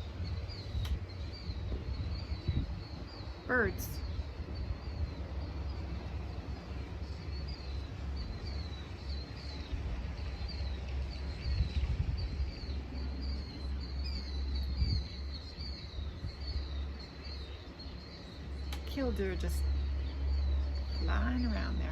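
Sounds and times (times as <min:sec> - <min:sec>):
wind on microphone: 0:00.0 - 0:21.9.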